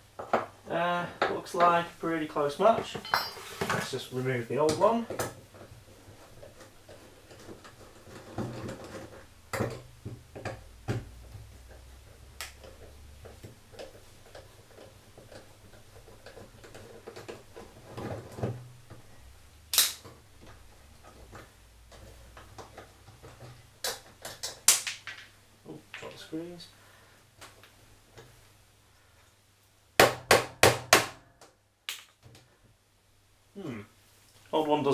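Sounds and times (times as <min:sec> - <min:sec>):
tools and metal parts clicking: 0:02.9 - 0:03.9.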